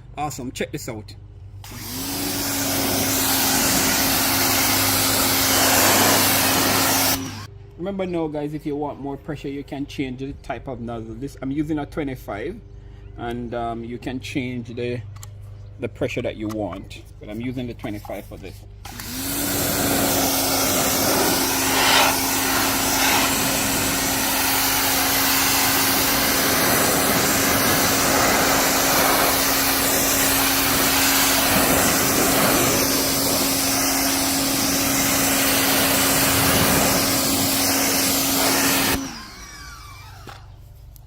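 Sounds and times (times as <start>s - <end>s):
pressure washer motor hum: 1.6s - 7.5s, 18.8s - 41.0s
hiss of water jet: 2.7s - 7.5s, 19.5s - 39.0s.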